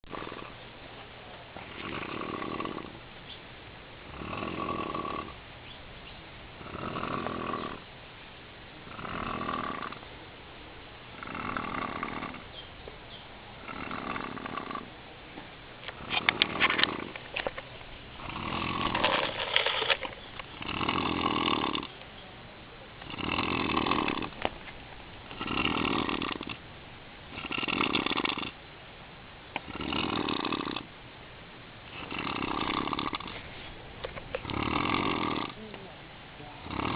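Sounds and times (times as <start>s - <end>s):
man snoring: 0.1s - 0.5s, 1.7s - 3.0s, 4.1s - 5.4s, 6.6s - 7.8s, 8.9s - 10.0s, 11.2s - 12.4s, 13.6s - 14.9s, 18.2s - 19.1s, 20.6s - 21.9s, 23.0s - 24.4s, 25.3s - 26.6s, 27.4s - 28.6s, 29.7s - 30.9s, 32.0s - 33.3s, 34.4s - 35.7s, 36.6s - 36.9s.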